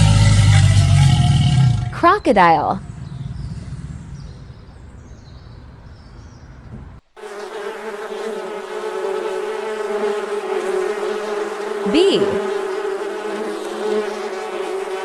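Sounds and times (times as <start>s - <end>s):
low rumbling growl: 0.0s - 2.0s, 2.8s - 6.7s
bee buzzing: 7.2s - 15.0s.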